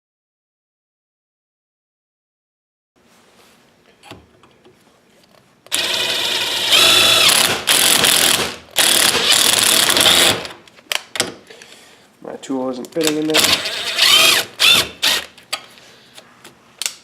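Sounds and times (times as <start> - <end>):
faint handling sounds: 3.0 - 5.6
electric drill running: 5.7 - 10.6, 13.4 - 15.4.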